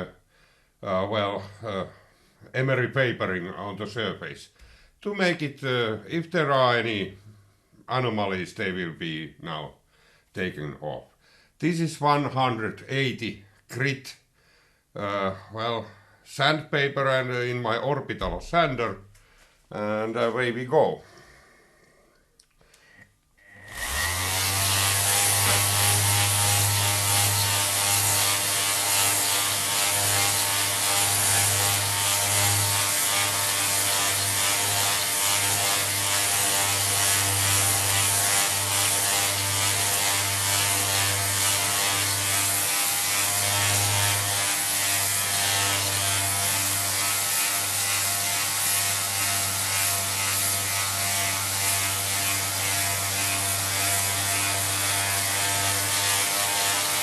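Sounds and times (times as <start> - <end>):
orbital sander on metal: 23.6 - 57.0.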